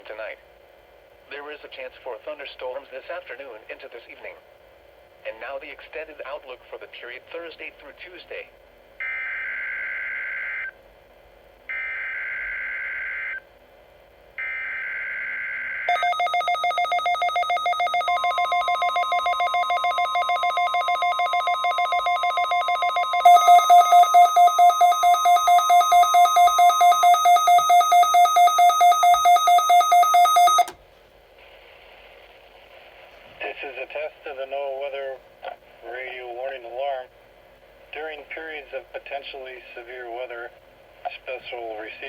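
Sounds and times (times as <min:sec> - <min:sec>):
second louder receiver alarm: 0:14.4 - 0:30.8
receiver alarm beeping rapidly: 0:15.9 - 0:30.7
steady warning alarm tone: 0:15.9 - 0:30.8.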